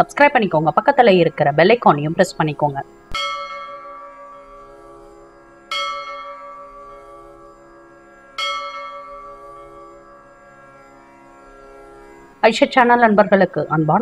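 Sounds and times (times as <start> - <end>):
deep bell ringing: 1.9 - 12.4.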